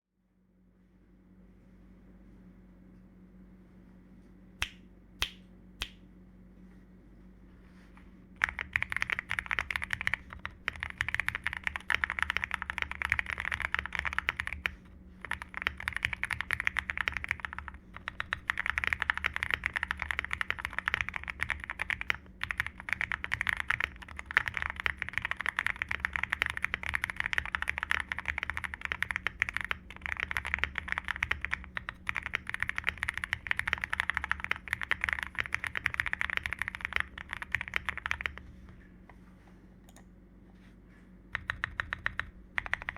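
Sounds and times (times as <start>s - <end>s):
fast typing on mechanical keyboard: 8.4s - 38.4s, 41.3s - 42.9s.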